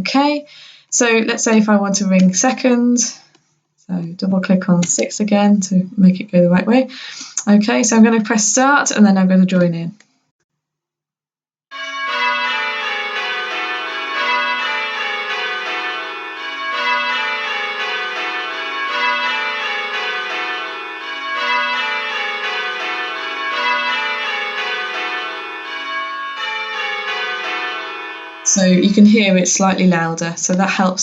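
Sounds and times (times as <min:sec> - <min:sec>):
simulated tower bells ringing: 0:11.7 - 0:30.2.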